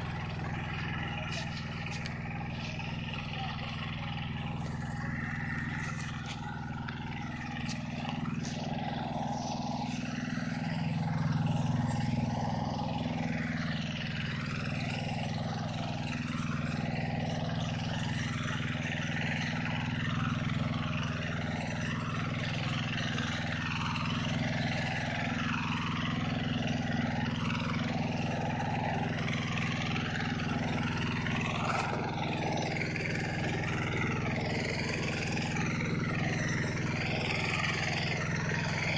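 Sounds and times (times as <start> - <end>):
rotary tiller churning: 0.0 - 38.9
tractor engine running: 0.0 - 38.9.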